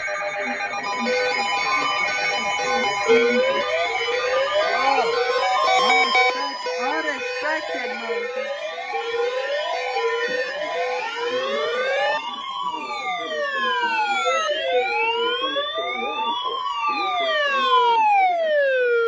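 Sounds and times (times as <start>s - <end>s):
wailing siren: 0.0s - 19.0s.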